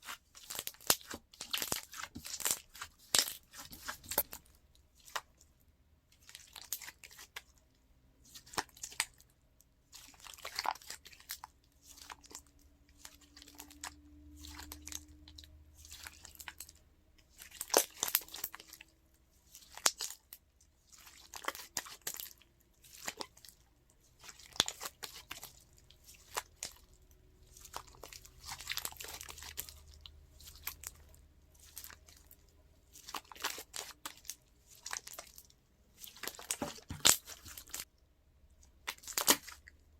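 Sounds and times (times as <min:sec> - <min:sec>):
crunchy slime crackling: 0:00.0 - 0:04.4, 0:24.2 - 0:37.9.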